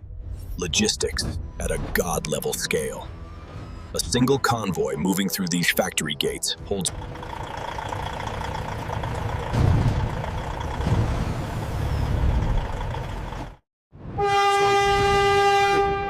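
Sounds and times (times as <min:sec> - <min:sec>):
truck engines rumbling: 0:03.9 - 0:13.6
truck air horn blast: 0:14.2 - 0:16.0.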